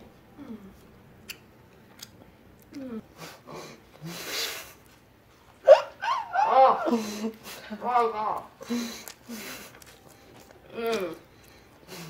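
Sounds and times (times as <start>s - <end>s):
person humming mm: 0.3s - 0.8s, 2.7s - 3.3s
chewing: 8.9s - 12.0s.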